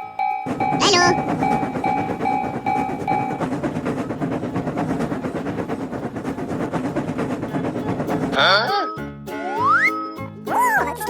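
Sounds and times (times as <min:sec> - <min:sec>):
railroad crossing alarm pulsing: 0:00.0 - 0:04.2
train rumbling and clattering: 0:00.0 - 0:09.2.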